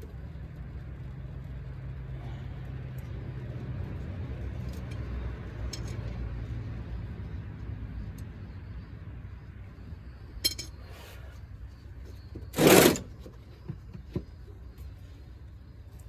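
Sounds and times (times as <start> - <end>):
loud harsh metal clatter: 12.6 - 13.1.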